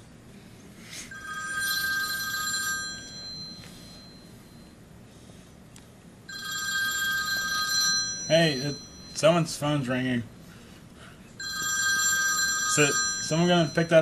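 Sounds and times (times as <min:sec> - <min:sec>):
telephone bell ringtone: 0:01.1 - 0:04.8, 0:06.3 - 0:09.3, 0:11.4 - 0:14.0.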